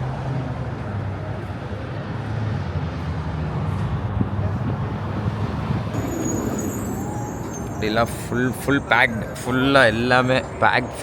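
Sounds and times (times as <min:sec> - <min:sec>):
car engine rumble: 0:03.7 - 0:10.6.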